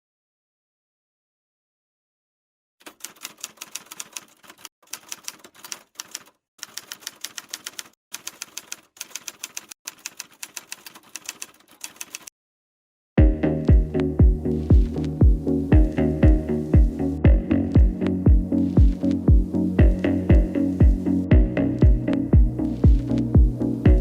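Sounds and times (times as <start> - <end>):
typewriter keys clacking: 2.8 - 12.3
electronic dance music: 13.2 - 24.0.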